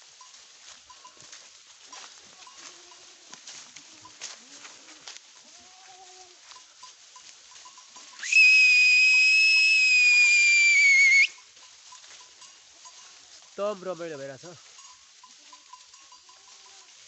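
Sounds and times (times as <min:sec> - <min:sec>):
goats bleating: 0:02.2 - 0:06.5
loud high-pitched whistle: 0:08.2 - 0:11.4.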